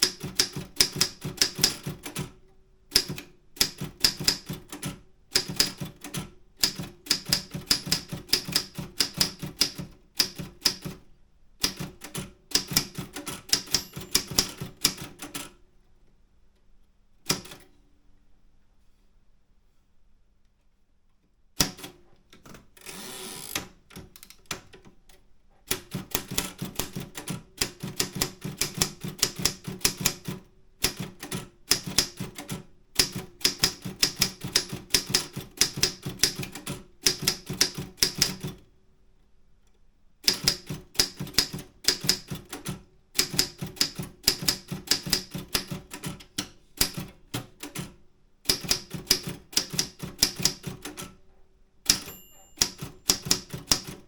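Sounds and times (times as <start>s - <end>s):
typewriter key strikes: 0.0s - 2.3s, 2.9s - 11.0s, 11.6s - 15.4s, 25.7s - 38.5s, 40.3s - 47.9s, 48.5s - 51.1s, 51.8s - 54.0s.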